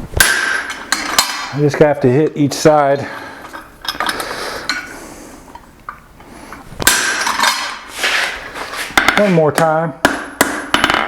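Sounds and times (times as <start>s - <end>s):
hammer striking hot steel: 9.0s - 11.0s.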